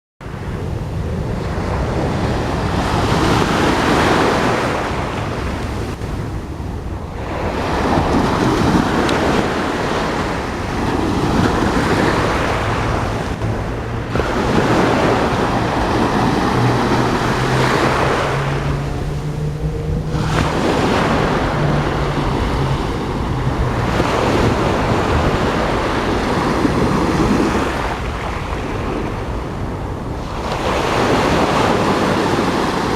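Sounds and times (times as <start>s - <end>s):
waves washing over pebbles: 7.1s - 32.9s.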